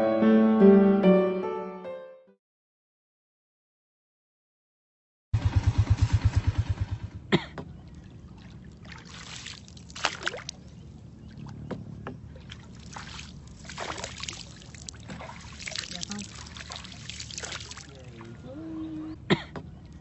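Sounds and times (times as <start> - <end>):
small boat engine chugging: 5.4 - 9.2, 10.4 - 17.1
water splashing and trickling: 7.7 - 20.0.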